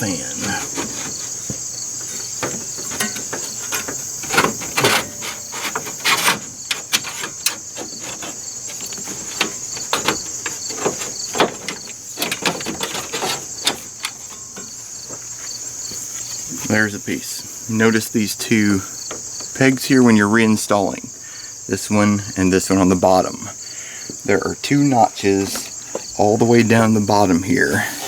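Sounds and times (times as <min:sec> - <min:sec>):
plastic scraping on metal: 0:00.0 - 0:16.0, 0:25.2 - 0:28.0
crickets chirping: 0:00.0 - 0:28.0
plastic knocks and clicks: 0:00.6 - 0:15.2.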